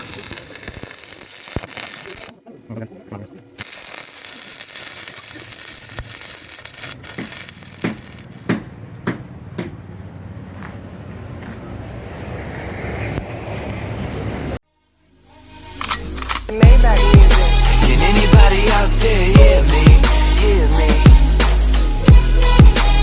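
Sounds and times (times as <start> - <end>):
workshop noise: 0.0 - 2.3, 3.5 - 14.2
hammer knocking on iron: 8.5 - 9.8.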